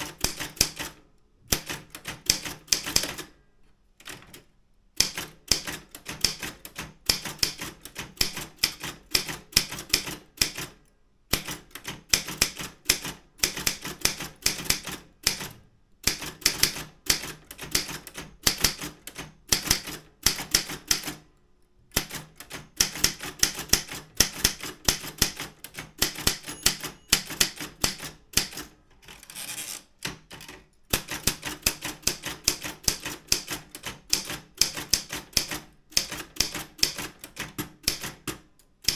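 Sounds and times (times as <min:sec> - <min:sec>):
typewriter typing clacks: 0:00.0 - 0:03.3, 0:05.0 - 0:21.2, 0:21.9 - 0:38.9.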